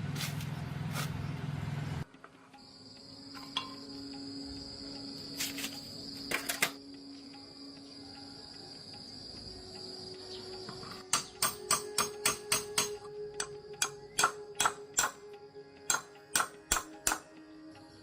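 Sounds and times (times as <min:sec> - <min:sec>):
high-pitched ringing hum: 0:02.6 - 0:18.0
sharp metallic taps: 0:11.0 - 0:15.2, 0:15.9 - 0:17.3.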